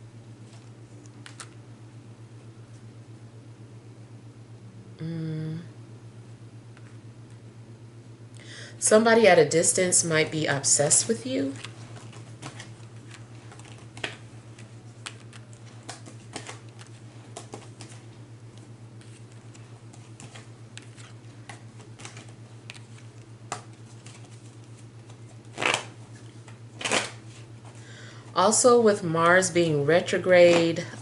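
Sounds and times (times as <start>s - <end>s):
steady low hum: 0.0s - 31.0s
cards brushing: 11.4s - 27.8s
cards clicking and tapping: 11.6s - 18.0s.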